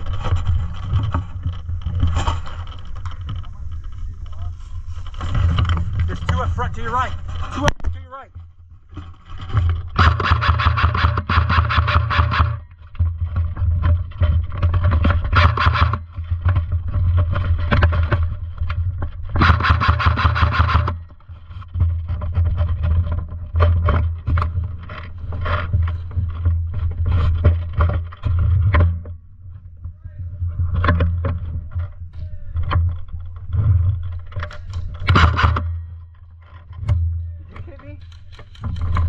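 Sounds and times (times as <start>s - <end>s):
airsoft guns firing full-auto: 10.0s - 12.6s, 15.4s - 16.0s, 19.4s - 20.9s.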